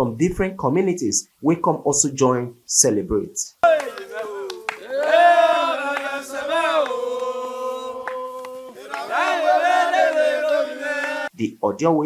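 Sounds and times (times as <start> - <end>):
chanted singing in held notes: 3.6 - 11.3.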